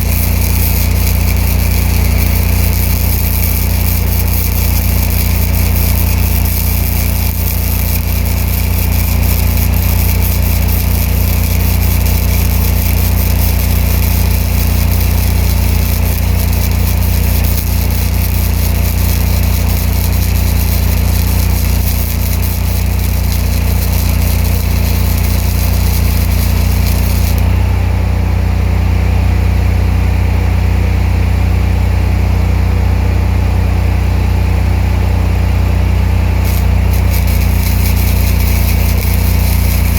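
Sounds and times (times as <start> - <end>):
welding arc hissing crackle: 0.0 - 27.7, 36.4 - 39.9
welder engine running: 0.0 - 29.3, 34.1 - 39.9.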